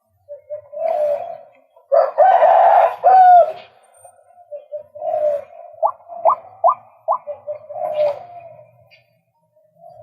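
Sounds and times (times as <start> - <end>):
waterhen calling: 5.0 - 8.6.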